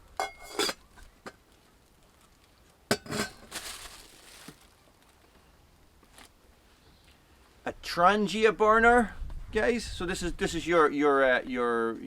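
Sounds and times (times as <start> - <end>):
rustle: 0.0 - 7.7
metal cookware clinking: 0.2 - 0.8, 2.9 - 3.4.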